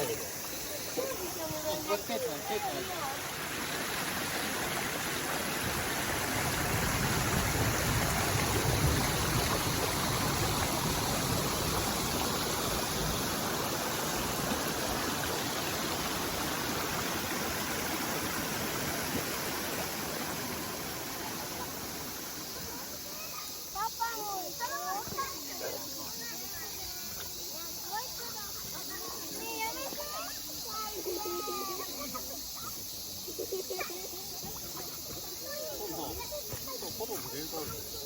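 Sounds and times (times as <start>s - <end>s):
river water rushing: 0.0s - 22.7s.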